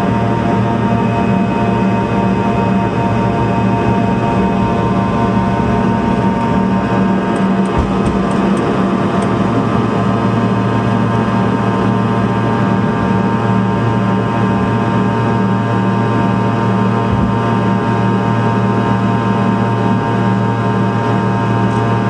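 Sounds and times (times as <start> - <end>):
jet engines roaring: 0.0 - 22.0.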